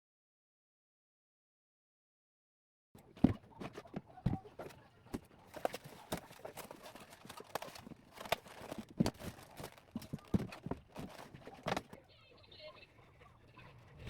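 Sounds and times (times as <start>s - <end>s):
kitchen items knocking: 3.0s - 12.0s.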